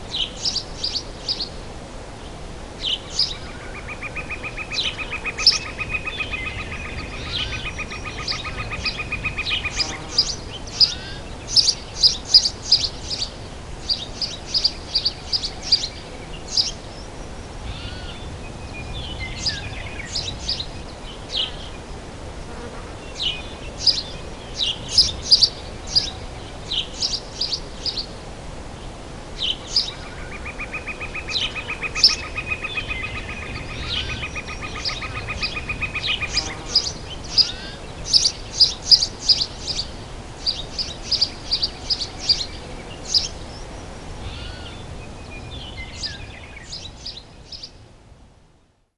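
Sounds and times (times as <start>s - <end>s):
forest birds chirping: 0.0s - 47.9s
insect pulsing buzz: 36.2s - 37.6s.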